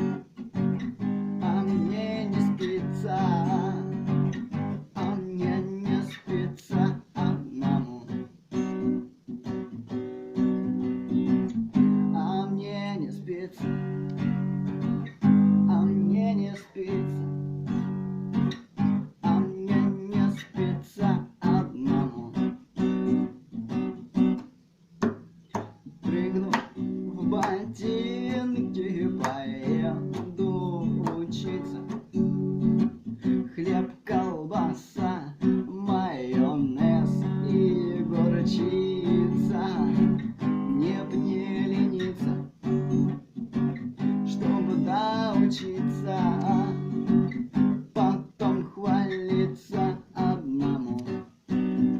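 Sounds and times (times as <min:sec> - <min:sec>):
acoustic guitar strummed: 0:00.0 - 0:51.9
person singing: 0:01.4 - 0:08.7, 0:12.0 - 0:14.2, 0:15.6 - 0:17.4, 0:19.0 - 0:22.6, 0:26.0 - 0:43.2, 0:44.0 - 0:51.3.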